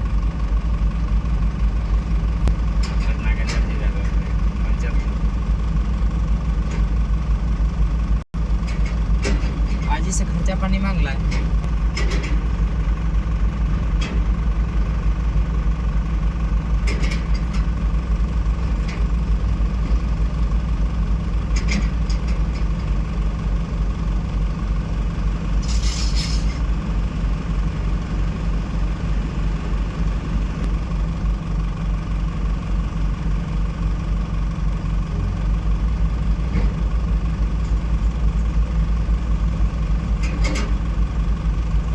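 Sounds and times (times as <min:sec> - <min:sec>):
diesel engine running: 0:00.0 - 0:41.9
short hiss: 0:25.6 - 0:26.6.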